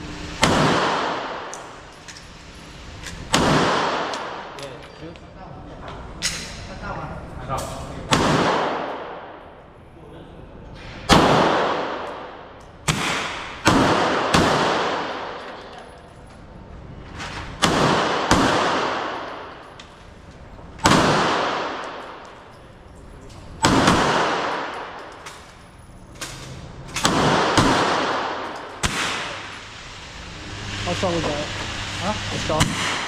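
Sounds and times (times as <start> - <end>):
gunshots echoing: 0.4 - 1.5, 3.3 - 4.6, 8.1 - 9.4, 11.1 - 15.4, 17.6 - 19.6, 20.8 - 22.4, 23.6 - 25.2, 26.9 - 29.6, 32.5 - 33.0.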